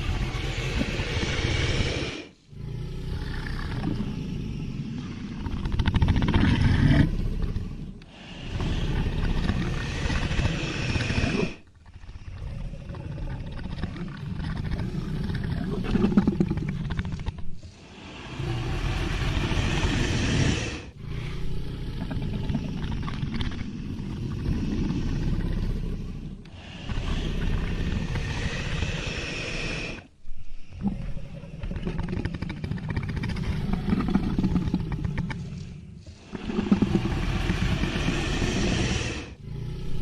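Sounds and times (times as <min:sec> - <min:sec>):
dragon roaring and growling: 0:00.0 - 0:07.8, 0:17.8 - 0:23.1, 0:36.1 - 0:40.0.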